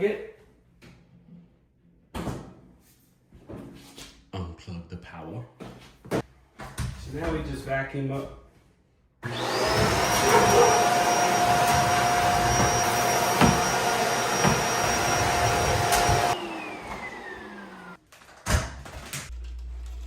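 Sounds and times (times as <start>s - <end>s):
vacuum cleaner whining: 9.2s - 18.0s
vacuum nozzle knocking: 9.3s - 16.4s.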